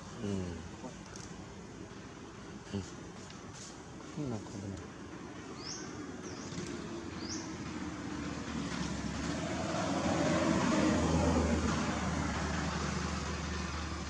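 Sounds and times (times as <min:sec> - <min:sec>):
vehicle engine approaching: 0:06.2 - 0:14.0.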